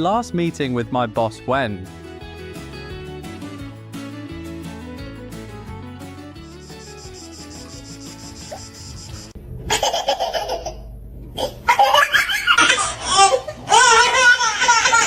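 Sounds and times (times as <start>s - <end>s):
background music: 0.0s - 9.4s.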